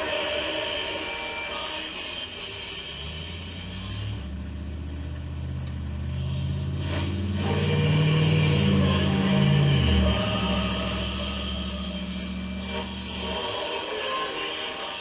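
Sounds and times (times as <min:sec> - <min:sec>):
low droning tones shifting pitch: 0:02.4 - 0:14.4.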